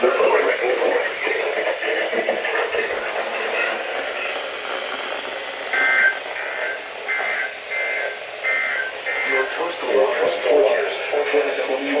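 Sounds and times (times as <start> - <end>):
radio static hiss: 0.0 - 12.0.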